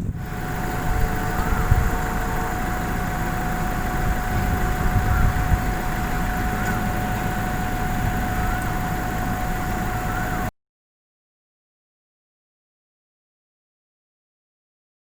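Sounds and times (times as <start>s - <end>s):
steady engine whine: 0.0s - 10.5s
vehicle engine rumble: 0.0s - 10.5s.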